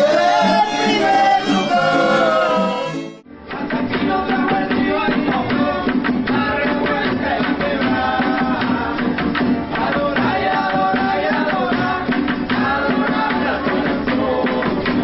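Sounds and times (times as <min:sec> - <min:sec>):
hand drums fast rhythm: 0:03.6 - 0:15.0.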